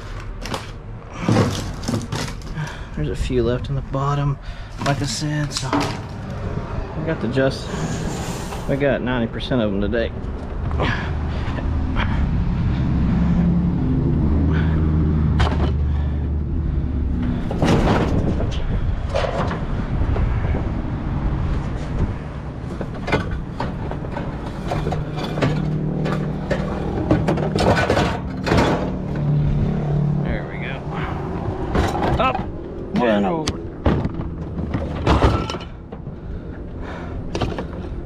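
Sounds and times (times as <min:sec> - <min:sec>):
scrap knocking and clanking: 0:00.4 - 0:02.9, 0:17.2 - 0:20.8, 0:21.7 - 0:29.8, 0:31.0 - 0:33.2, 0:33.8 - 0:36.4
vehicle engine humming: 0:02.4 - 0:38.0.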